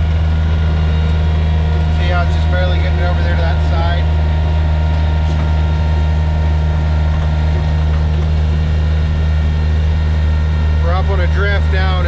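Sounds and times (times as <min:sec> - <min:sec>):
diesel engine droning: 0:00.0 - 0:12.0.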